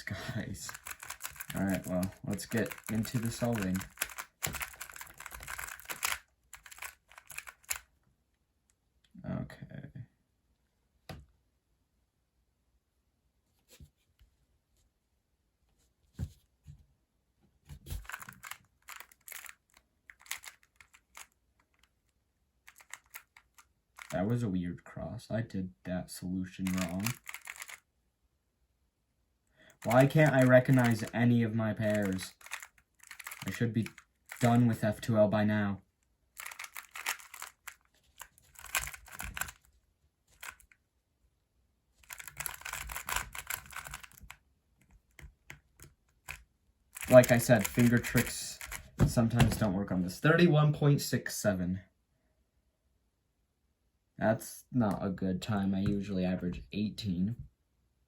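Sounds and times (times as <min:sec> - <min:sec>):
puzzle cube clicking: 0:00.6 - 0:07.9, 0:17.9 - 0:21.9, 0:22.7 - 0:24.2, 0:26.6 - 0:27.8, 0:29.8 - 0:34.8, 0:36.4 - 0:39.7, 0:40.4 - 0:40.8, 0:42.0 - 0:44.4, 0:47.0 - 0:49.7.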